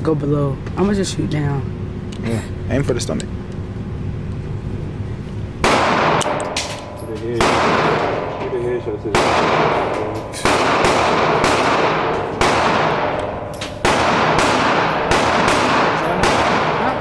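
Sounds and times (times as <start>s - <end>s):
gunshots echoing indoors: 5.6s - 17.0s.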